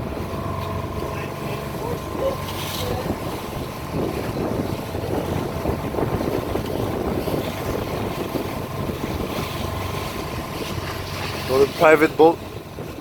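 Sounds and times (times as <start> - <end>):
boat engine running: 0.0 - 13.0
wind buffeting microphone: 0.0 - 13.0.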